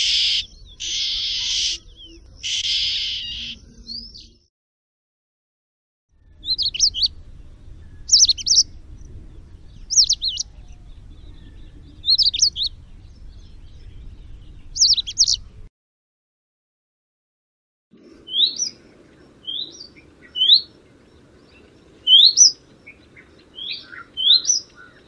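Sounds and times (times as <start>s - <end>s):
small bird whistling song: 0.0s - 4.5s, 6.2s - 15.6s, 18.2s - 25.0s
faint low background rumble: 6.2s - 15.7s.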